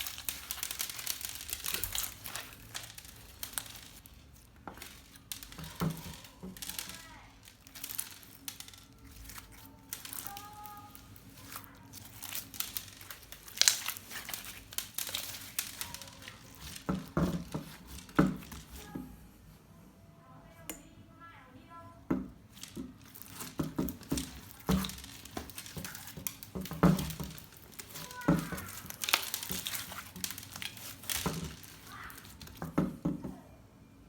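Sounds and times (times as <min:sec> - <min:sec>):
slime crackling and popping: 0:00.0 - 0:19.0, 0:22.4 - 0:33.1.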